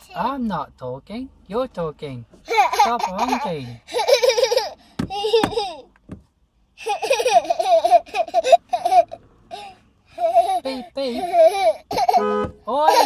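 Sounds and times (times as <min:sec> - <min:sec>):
small child laughing: 0:02.5 - 0:05.9, 0:06.8 - 0:13.0.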